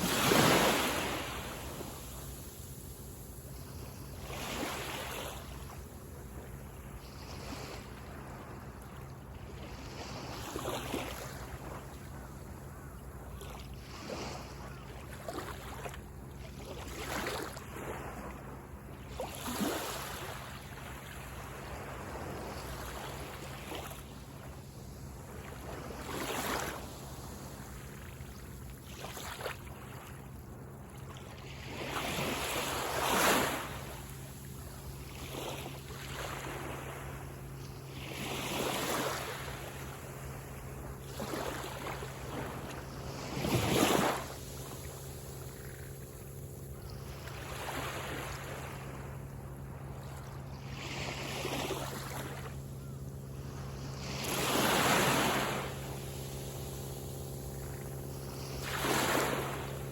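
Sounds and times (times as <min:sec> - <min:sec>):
small waves breaking on beach: 0:00.0 - 0:59.9.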